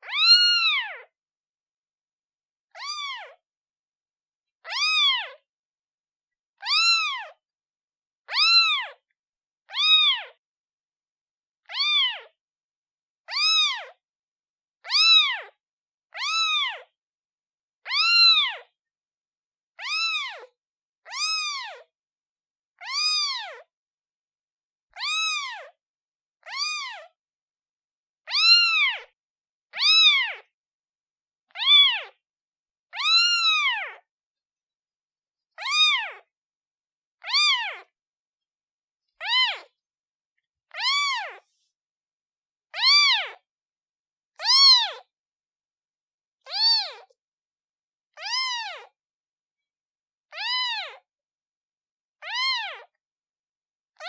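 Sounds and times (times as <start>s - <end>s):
kitten meowing: 0.0s - 1.1s, 2.7s - 3.4s, 4.6s - 5.4s, 6.6s - 7.4s, 8.3s - 9.0s, 9.7s - 10.4s, 11.6s - 12.3s, 13.3s - 14.0s, 14.8s - 15.5s, 16.1s - 16.9s, 17.9s - 18.7s, 19.8s - 20.5s, 21.1s - 21.9s, 22.8s - 23.7s, 24.9s - 25.8s, 26.4s - 27.1s, 28.3s - 30.5s, 31.5s - 32.2s, 32.9s - 34.0s, 35.6s - 36.3s, 37.2s - 37.9s, 39.2s - 39.7s, 40.7s - 41.7s, 42.7s - 43.4s, 44.4s - 45.1s, 46.5s - 47.2s, 48.2s - 49.0s, 50.3s - 51.0s, 52.2s - 52.9s.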